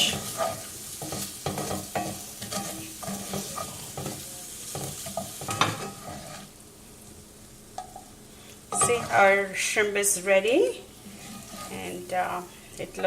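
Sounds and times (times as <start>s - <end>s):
spatula scraping a pan: 0.0s - 6.6s, 8.7s - 9.7s, 11.0s - 12.4s
shrimp sizzling in a frying pan: 0.0s - 13.0s.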